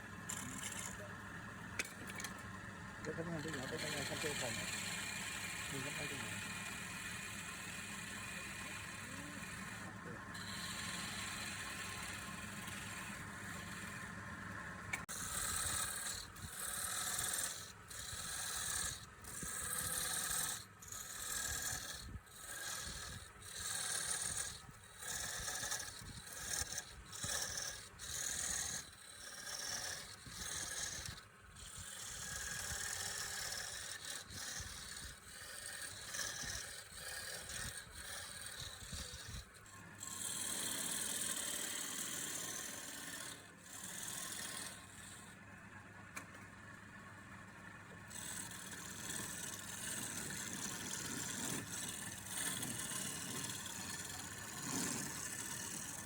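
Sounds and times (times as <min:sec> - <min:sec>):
tool rasping spinning wood: 0:00.0 - 0:45.6, 0:46.2 - 0:56.0
wood lathe humming: 0:00.0 - 0:45.6, 0:46.2 - 0:56.0.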